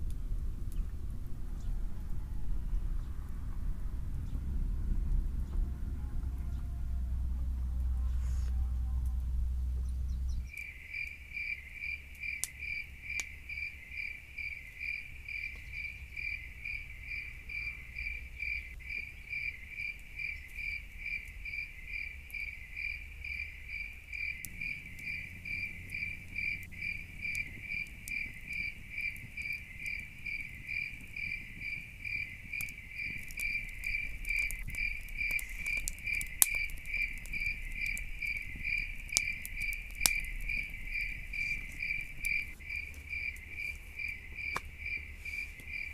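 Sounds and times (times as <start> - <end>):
cricket chirping: 9.8 - 45.9.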